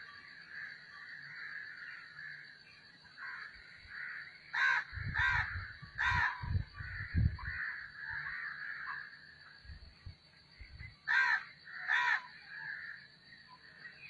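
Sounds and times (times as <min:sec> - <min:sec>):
bird harsh calls: 0:03.2 - 0:09.3, 0:11.1 - 0:13.0.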